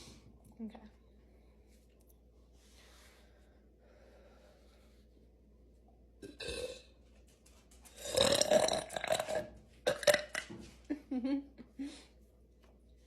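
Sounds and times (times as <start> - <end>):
faint breaths: 1.0 - 5.4.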